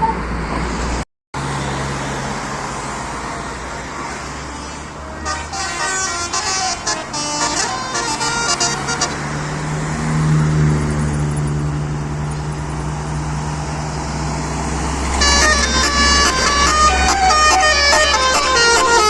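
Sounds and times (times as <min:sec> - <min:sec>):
bus engine humming: 0:00.0 - 0:19.0
multi-tone bus horn melody: 0:03.3 - 0:09.7, 0:15.0 - 0:19.0.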